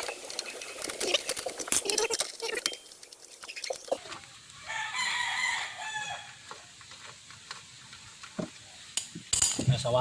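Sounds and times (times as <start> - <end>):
rooster crowing: 4.6 - 6.7.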